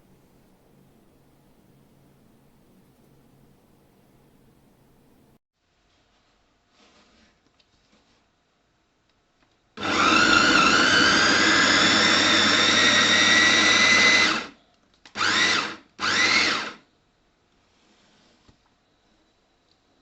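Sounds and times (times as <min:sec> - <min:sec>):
food chopper motor whining: 0:09.8 - 0:14.5, 0:15.2 - 0:16.8.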